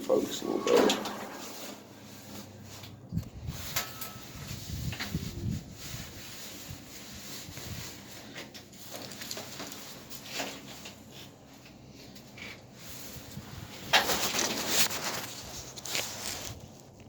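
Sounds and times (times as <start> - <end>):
light handling rustles and clicks: 7.4 - 17.0.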